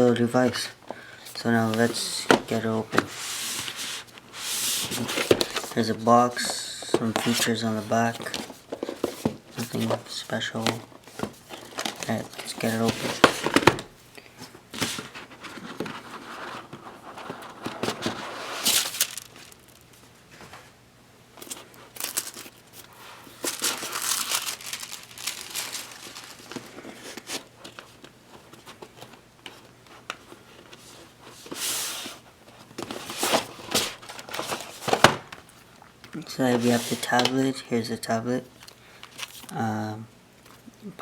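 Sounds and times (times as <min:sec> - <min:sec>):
packaging rustling and tearing: 0:01.4 - 0:05.8, 0:07.1 - 0:13.9, 0:14.8 - 0:20.0, 0:21.4 - 0:30.8, 0:31.4 - 0:35.7, 0:38.5 - 0:39.6.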